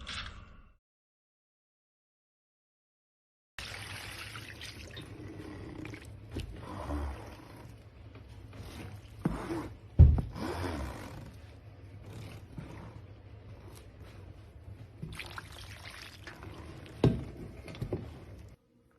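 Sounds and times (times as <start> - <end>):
liquid trickling and splashing: 3.6 - 6.6, 15.0 - 17.0.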